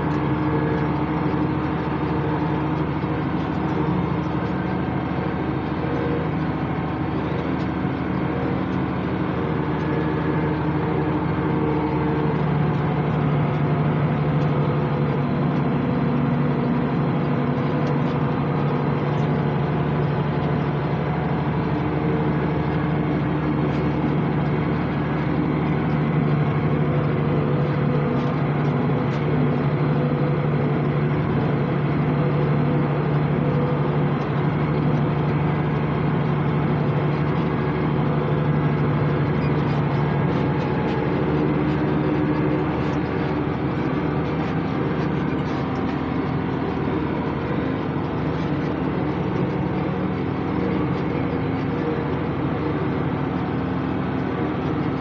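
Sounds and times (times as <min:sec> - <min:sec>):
tractor diesel engine running: 0:00.0 - 0:55.0.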